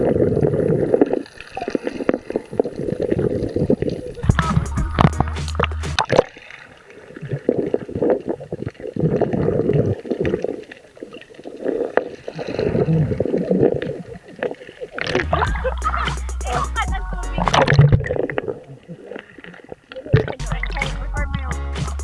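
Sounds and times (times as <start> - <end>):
sea water sloshing and gurgling: 0.0 - 16.2, 16.8 - 21.4
background music: 4.3 - 6.0, 15.2 - 17.6, 20.4 - 22.0.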